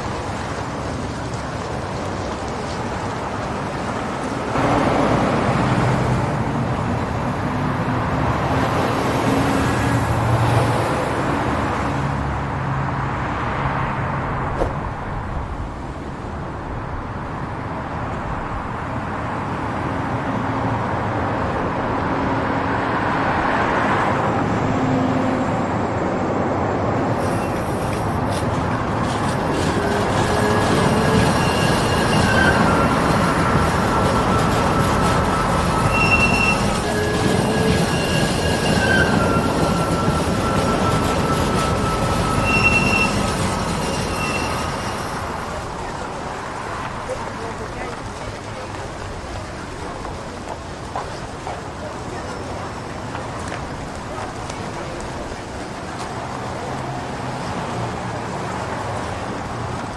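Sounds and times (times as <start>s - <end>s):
cars and buses passing: 0.0s - 59.9s.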